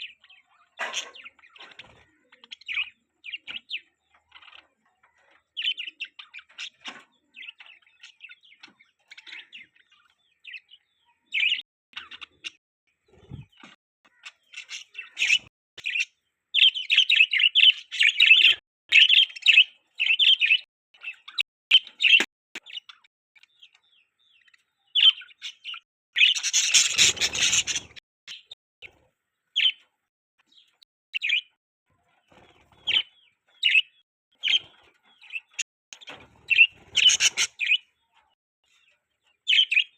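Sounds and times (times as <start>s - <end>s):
budgerigars chirping: 14.1s - 28.6s, 29.6s - 29.8s, 30.5s - 31.6s, 32.4s - 37.9s, 39.5s - 39.9s.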